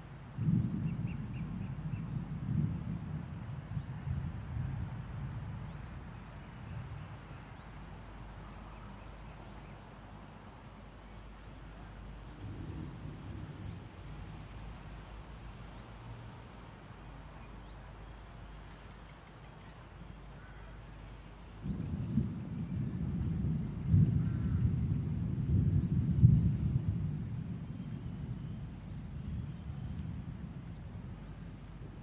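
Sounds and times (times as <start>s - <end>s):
low rumble: 12.0s - 14.8s.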